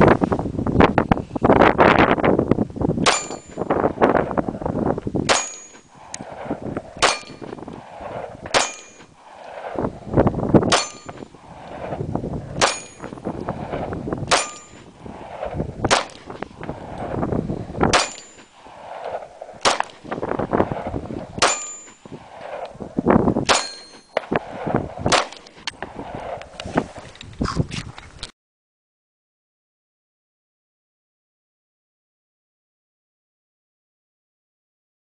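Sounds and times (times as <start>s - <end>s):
wind rumbling on microphone: 0.0s - 28.3s
steel target ringing: 3.0s - 3.8s, 5.3s - 6.0s, 7.0s - 7.6s, 8.5s - 9.1s, 10.7s - 11.4s, 12.6s - 13.3s, 14.3s - 14.9s, 17.9s - 18.6s, 21.4s - 22.1s, 23.4s - 24.3s
pistol shots: 7.0s - 7.6s, 8.5s - 9.1s, 14.3s - 14.9s, 15.8s - 16.4s, 17.8s - 18.4s, 19.6s - 20.1s, 21.4s - 22.0s, 23.4s - 24.4s, 25.0s - 25.4s.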